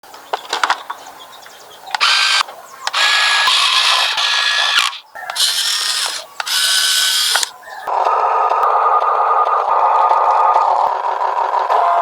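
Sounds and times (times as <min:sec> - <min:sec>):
small electric motor and gears whirring: 0:01.9 - 0:07.6.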